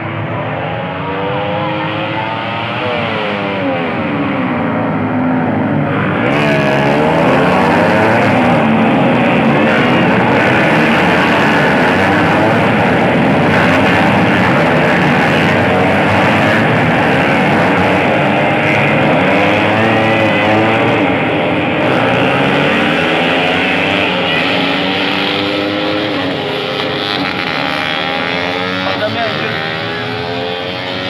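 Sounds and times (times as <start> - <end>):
racing motorcycle engines revving: 0.0 - 31.0.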